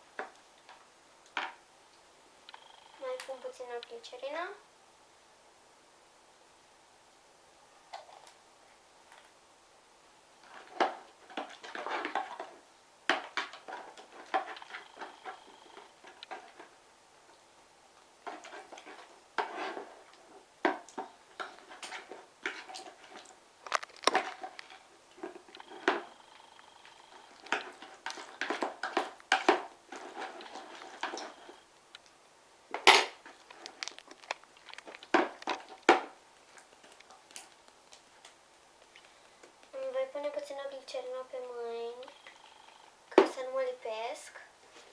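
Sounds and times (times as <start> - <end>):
utensil clacking and scraping container: 18.2 - 26.2, 26.8 - 31.6, 32.8 - 36.1.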